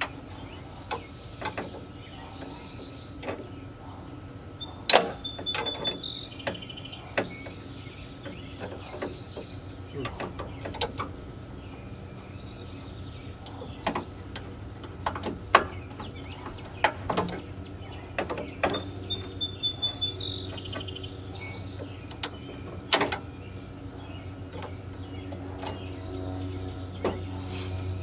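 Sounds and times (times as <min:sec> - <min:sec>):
high chirps: 0:04.6 - 0:07.6.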